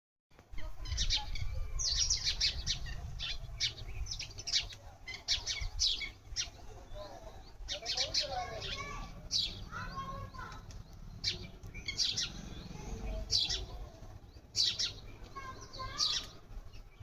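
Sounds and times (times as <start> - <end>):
small birds chirping: 0.3 - 17.0.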